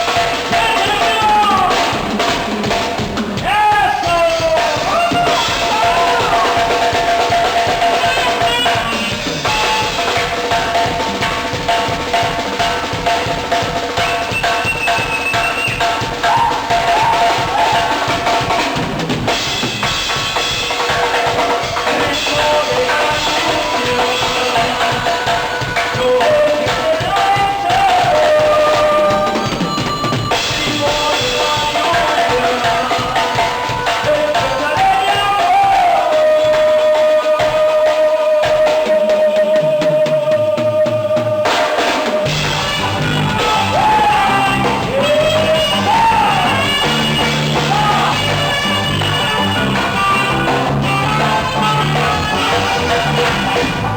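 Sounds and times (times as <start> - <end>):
driving drum beat: 0.0 - 53.9
instrumental melody: 42.3 - 53.9.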